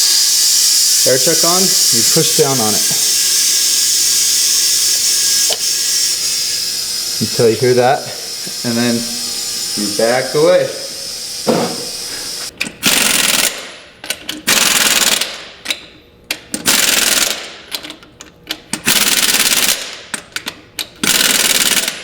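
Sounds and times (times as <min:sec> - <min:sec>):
air chuck clicks: 0:00.0 - 0:07.5
compressed air hissing into tire: 0:00.0 - 0:12.5.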